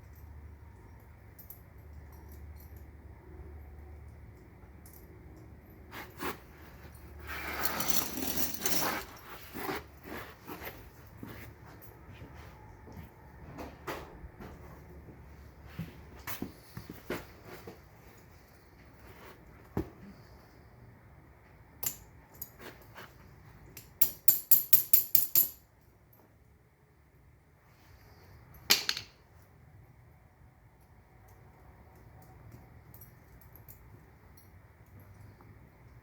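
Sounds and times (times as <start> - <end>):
chain links clinking: 0.0 - 12.0, 30.8 - 35.4.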